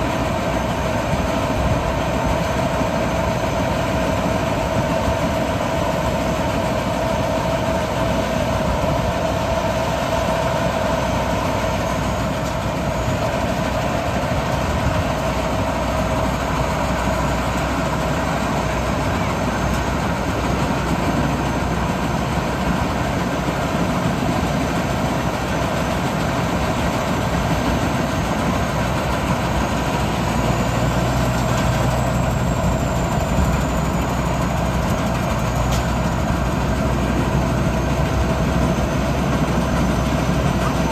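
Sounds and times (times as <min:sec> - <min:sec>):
farm machine engine running: 0:00.0 - 0:40.9
mechanical whine: 0:00.0 - 0:40.9.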